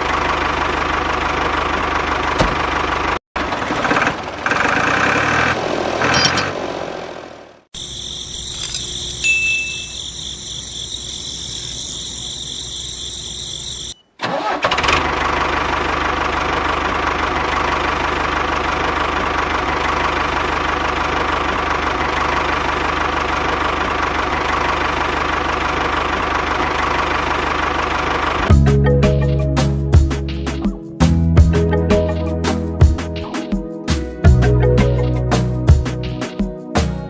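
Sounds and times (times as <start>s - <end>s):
engine starting and running: 0.0s - 9.2s, 10.1s - 29.7s.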